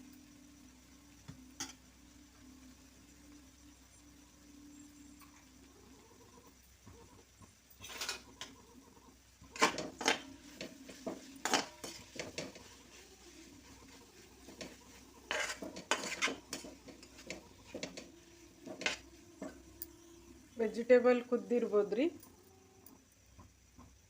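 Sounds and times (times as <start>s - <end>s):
metal utensil scraping a pan: 7.8s - 8.6s, 9.5s - 19.8s.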